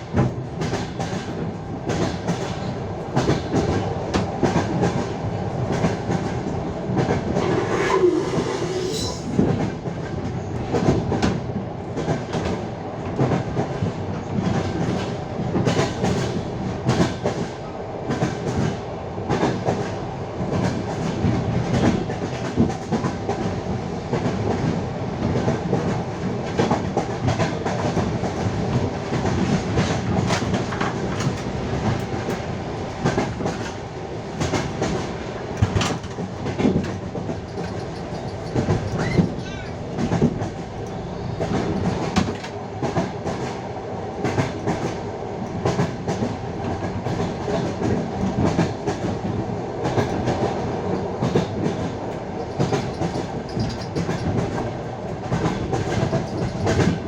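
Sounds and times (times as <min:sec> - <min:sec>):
train wheels clacking on rails: 0:00.0 - 0:57.0.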